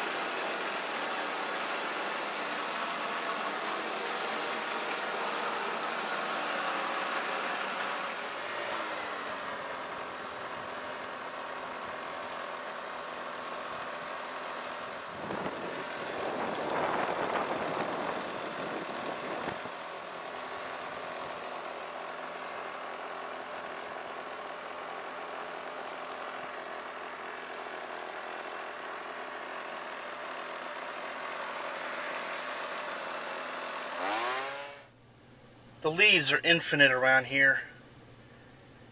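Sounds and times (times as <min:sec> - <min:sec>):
vehicle engine running: 0:00.0 - 0:38.9.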